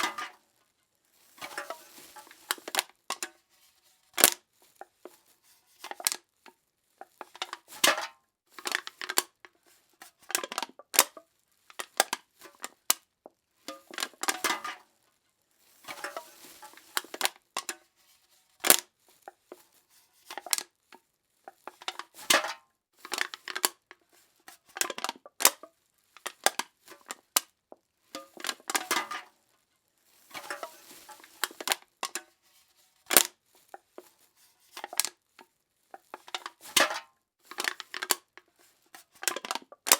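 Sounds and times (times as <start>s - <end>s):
drink cans being crushed: 13.7s - 14.8s, 21.7s - 23.8s, 28.2s - 29.3s, 36.2s - 38.3s, 39.2s - 39.9s.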